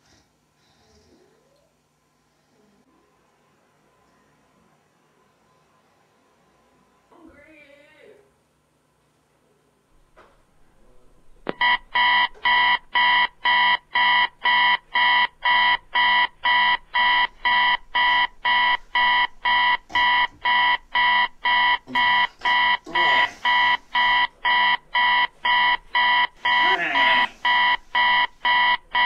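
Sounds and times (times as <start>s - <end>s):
alarm clock beeping: 11.6s - 29.0s.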